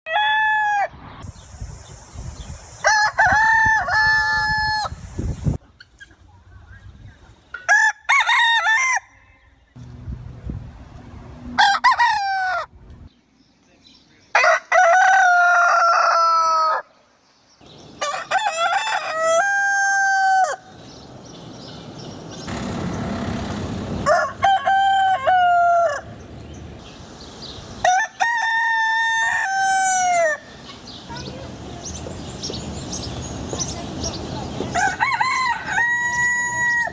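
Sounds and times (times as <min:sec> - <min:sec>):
roosters crowing: 0:00.1 - 0:01.0, 0:02.8 - 0:05.0, 0:07.6 - 0:09.6, 0:11.5 - 0:12.8, 0:14.3 - 0:17.0, 0:17.9 - 0:21.0, 0:22.4 - 0:26.6, 0:27.7 - 0:30.7, 0:34.6 - 0:36.9.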